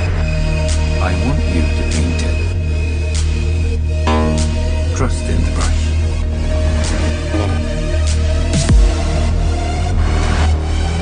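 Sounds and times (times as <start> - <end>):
dubstep trailer music with heavy bass: 0.0 - 11.0
downward pitch drop: 4.0 - 4.9.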